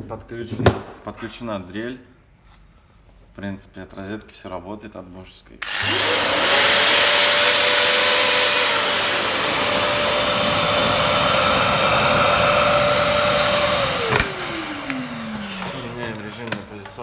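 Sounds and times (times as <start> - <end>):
electric drill whining: 5.6 - 16.9.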